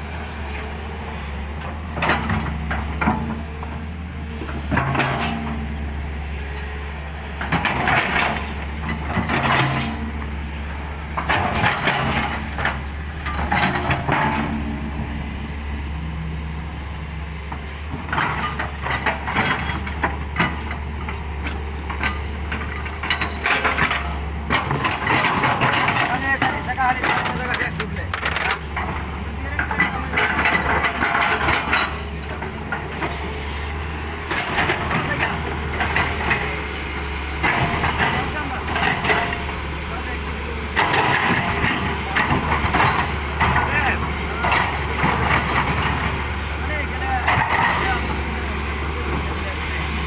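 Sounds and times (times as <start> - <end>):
excavator diesel engine running: 0.0 - 50.0
harsh clattering: 21.9 - 33.4, 37.4 - 48.2.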